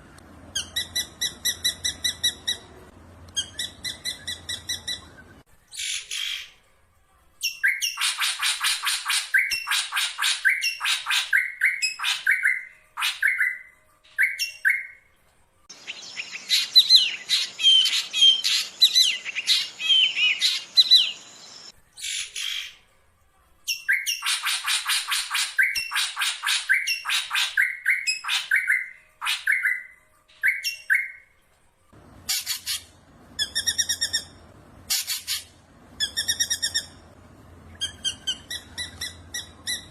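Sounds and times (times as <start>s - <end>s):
bird singing sharp repeated notes: 0.5s - 6.5s, 15.7s - 22.8s, 23.7s - 31.3s, 32.2s - 37.1s, 37.7s - 39.9s.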